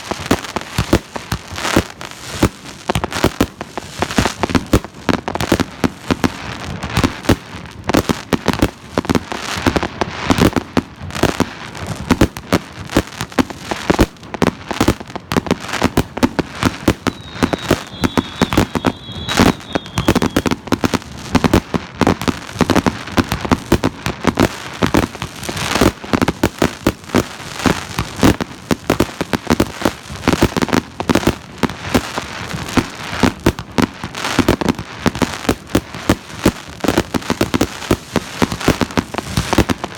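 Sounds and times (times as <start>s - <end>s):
fireworks banging: 15.8s - 26.5s.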